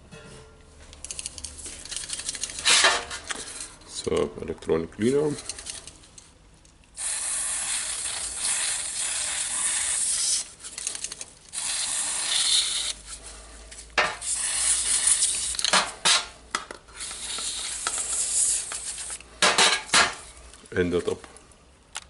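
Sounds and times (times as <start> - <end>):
parts clicking and rattling: 0.9 - 4.3, 5.2 - 6.8, 10.6 - 11.5
aerosol spray hissing: 7.0 - 10.4, 14.2 - 15.5.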